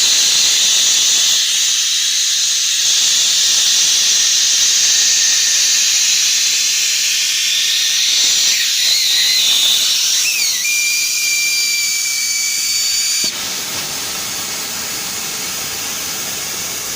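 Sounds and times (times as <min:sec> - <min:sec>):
hot-air welder hissing: 0:00.0 - 0:16.9
whistle: 0:00.1 - 0:13.3.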